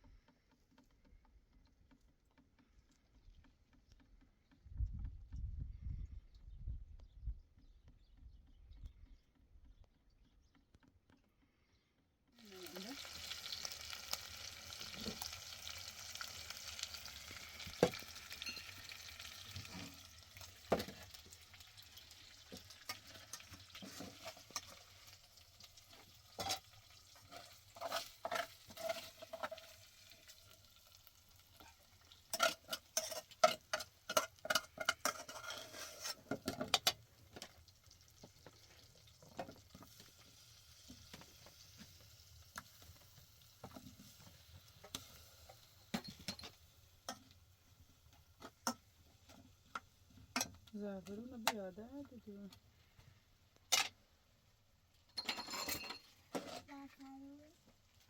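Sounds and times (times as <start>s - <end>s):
food sizzling in a pan: 12.4s - 51.7s
utensil scraping a pan: 22.5s - 30.5s, 31.6s - 37.5s.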